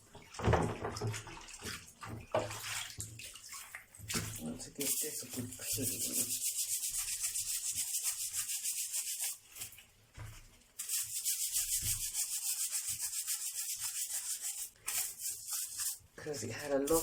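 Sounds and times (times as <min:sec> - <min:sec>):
brush scrubbing: 0:03.6 - 0:17.0.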